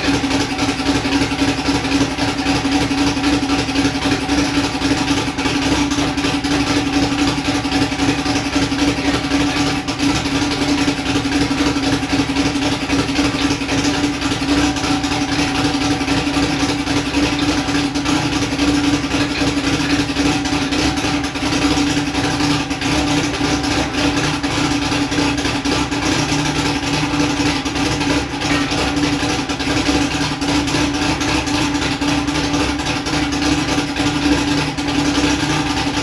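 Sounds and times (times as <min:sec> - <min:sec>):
car engine humming steadily: 0:00.0 - 0:36.0.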